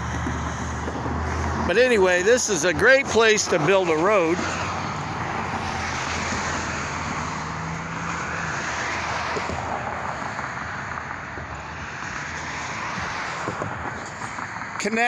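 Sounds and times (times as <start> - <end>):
low engine hum: 0.0 - 10.6
vehicles passing: 0.0 - 15.0.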